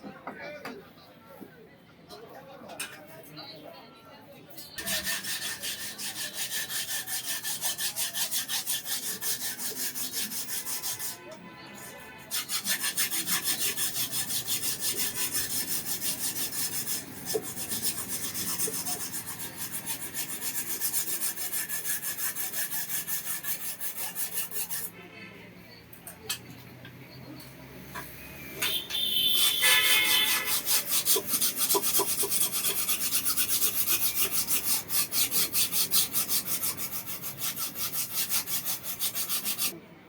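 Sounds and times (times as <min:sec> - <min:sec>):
blade rasping strokes: 0:04.8 - 0:24.9, 0:28.0 - 0:39.8.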